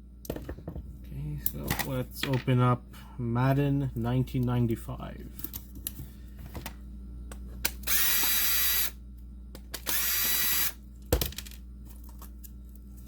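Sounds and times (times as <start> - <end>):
cordless power driver running: 7.9 - 9.0, 9.8 - 10.8.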